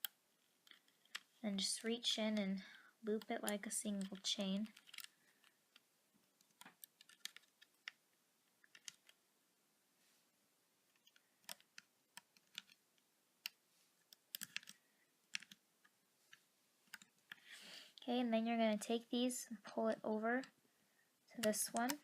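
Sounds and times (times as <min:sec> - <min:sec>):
rubber bands clicking and snapping: 0:03.1 - 0:09.2, 0:10.9 - 0:12.8, 0:13.4 - 0:16.0, 0:21.4 - 0:22.0.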